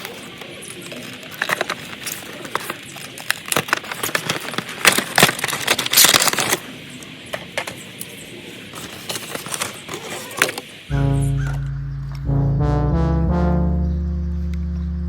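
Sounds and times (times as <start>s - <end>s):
packaging clicks and crinkles: 0.6s - 6.7s
packaging rustle: 0.6s - 6.7s.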